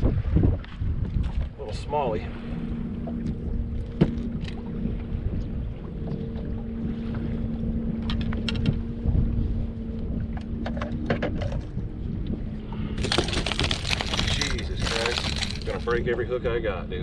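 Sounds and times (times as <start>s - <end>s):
boat low hum: 0.0s - 17.0s
wind rumble: 0.0s - 17.0s
fish splashing in water: 13.0s - 15.9s.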